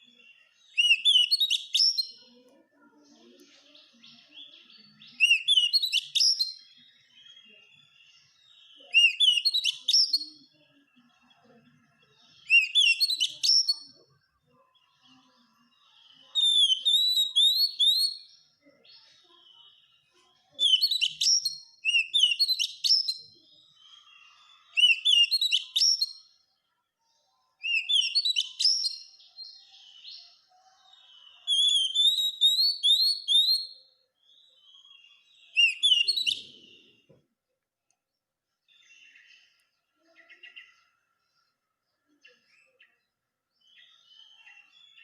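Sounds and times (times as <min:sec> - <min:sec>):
bird whistled song: 0:00.0 - 0:02.3, 0:03.8 - 0:10.6, 0:12.2 - 0:14.0, 0:16.0 - 0:18.4, 0:20.6 - 0:26.4, 0:27.6 - 0:30.4, 0:31.3 - 0:37.1, 0:42.3 - 0:45.0.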